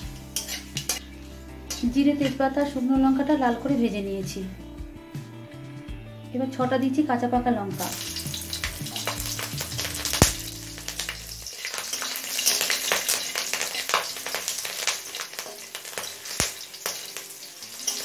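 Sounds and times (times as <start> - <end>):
chillies sizzling in hot oil: 0.0 - 4.2, 7.7 - 18.0
oil spattering pops: 8.6 - 10.5.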